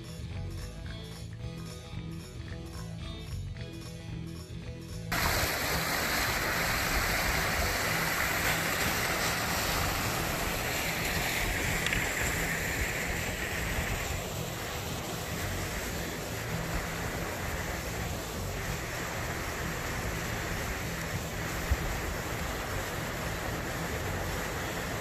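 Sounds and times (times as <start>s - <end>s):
music: 0.0s - 25.0s
rushing creek water: 5.1s - 25.0s.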